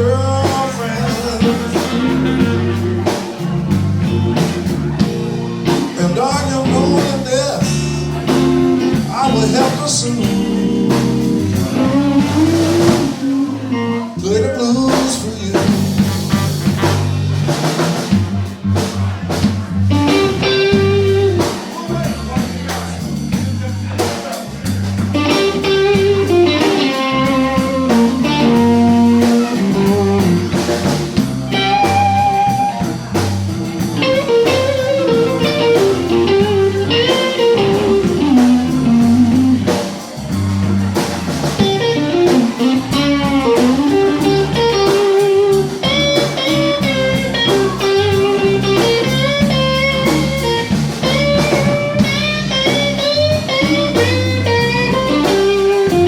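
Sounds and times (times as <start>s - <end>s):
drums: 0.0s - 56.0s
electric guitar lead: 0.0s - 56.0s
walking bass line: 0.0s - 56.0s.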